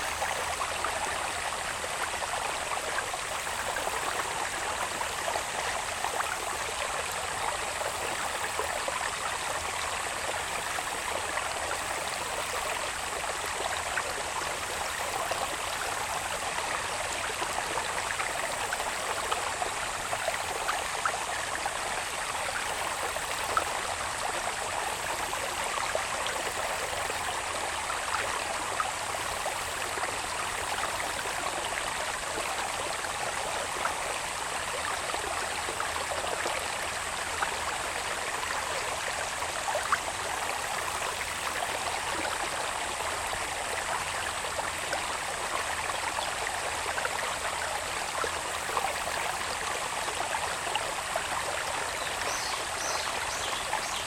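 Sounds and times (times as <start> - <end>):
water babbling in a channel: 0.0 - 54.0.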